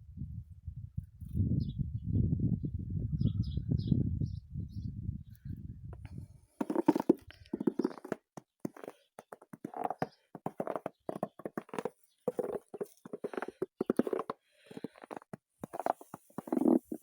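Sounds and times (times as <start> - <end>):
footsteps crunching in snow: 6.6 - 9.0, 9.7 - 17.0.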